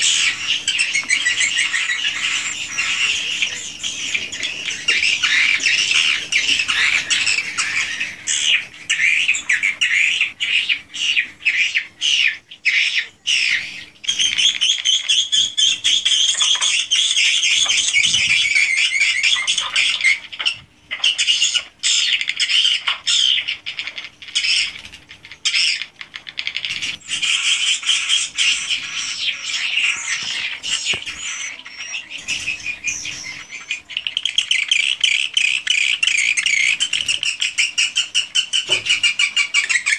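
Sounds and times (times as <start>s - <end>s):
swiftlets chirping and twittering: 0.0s - 39.9s.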